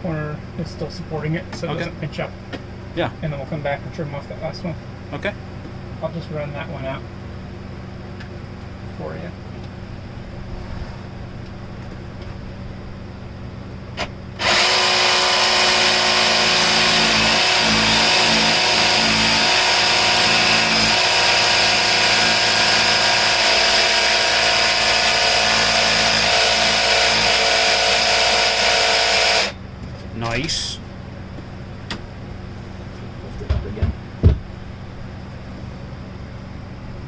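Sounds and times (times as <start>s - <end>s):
electric power tool running: 14.4s - 29.6s.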